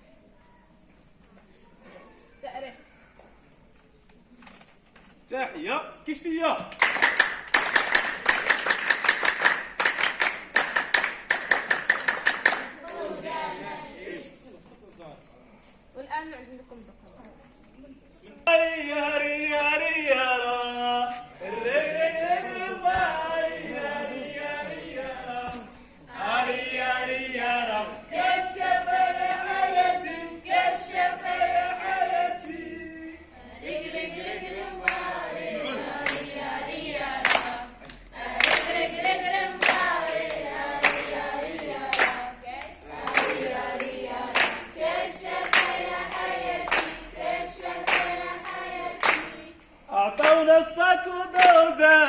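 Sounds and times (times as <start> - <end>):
hand clapping in time: 6.7 - 13.0, 37.2 - 38.8, 39.5 - 44.6, 45.3 - 47.0, 47.8 - 49.4, 50.2 - 50.5
children singing in unison: 12.8 - 14.1, 21.5 - 49.6.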